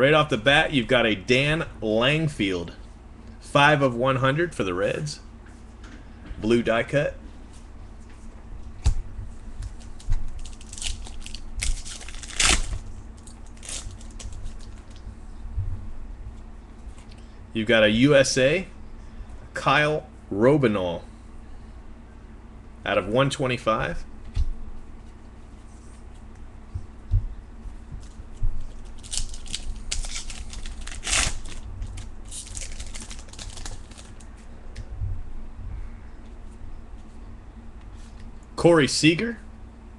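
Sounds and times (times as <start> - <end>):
packaging crinkling and rustling: 9.6 - 15.0, 28.0 - 34.3.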